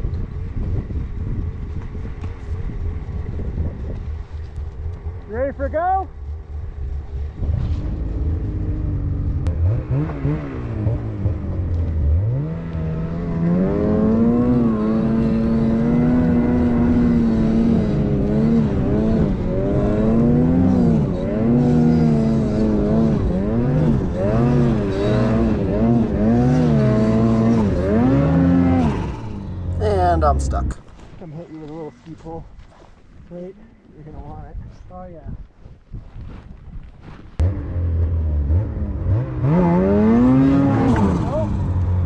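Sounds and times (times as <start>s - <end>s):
snowmobile engine revving: 7.0s - 30.8s, 37.4s - 42.0s.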